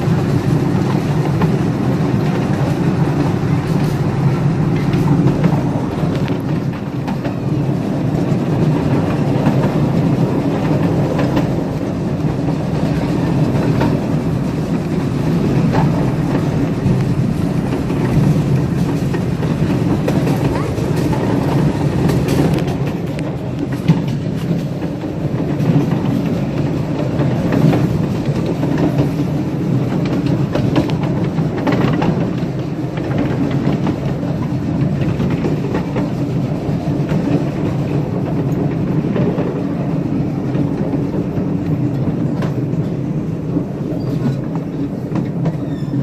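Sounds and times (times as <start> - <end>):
miniature train rumbling on track: 0.0 - 46.0
wheels clicking over rail joints: 0.0 - 46.0.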